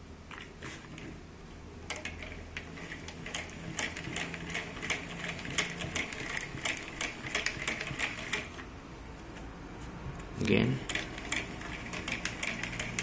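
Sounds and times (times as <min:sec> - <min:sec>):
hand-cranked generator clicking: 0:01.9 - 0:08.5, 0:10.8 - 0:13.0.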